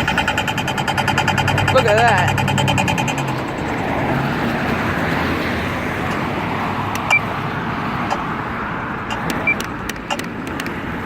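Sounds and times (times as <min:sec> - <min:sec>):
short high beep: 0:00.0 - 0:03.9
road traffic: 0:00.0 - 0:11.0.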